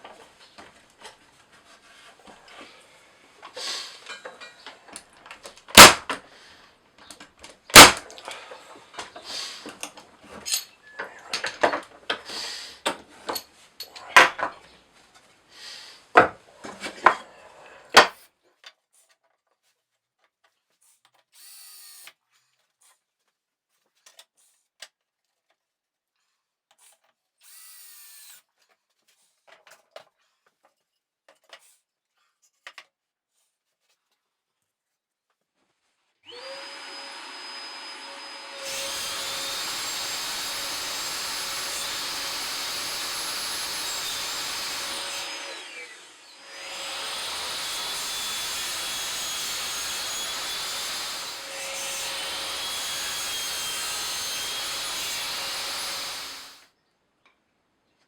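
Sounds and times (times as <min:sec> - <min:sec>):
power drill: 0:05.7 - 0:06.2, 0:07.7 - 0:09.9, 0:21.4 - 0:22.2, 0:27.4 - 0:28.4, 0:36.2 - 0:56.7.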